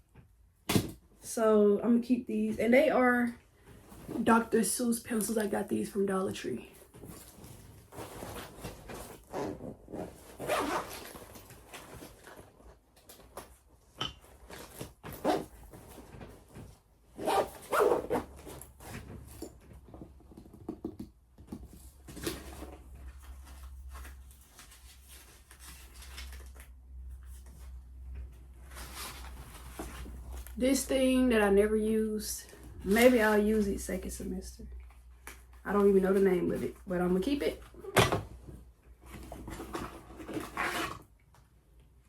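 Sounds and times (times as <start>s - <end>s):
rummaging through tool bag: 6.9s - 20.2s.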